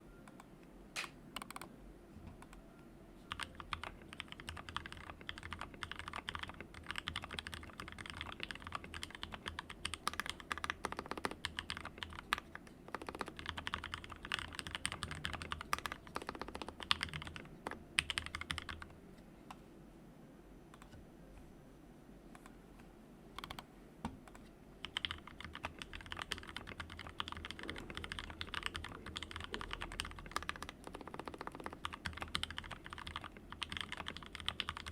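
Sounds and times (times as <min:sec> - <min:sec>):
typing on mechanical keyboard: 0:03.3 - 0:18.9, 0:24.8 - 0:34.9.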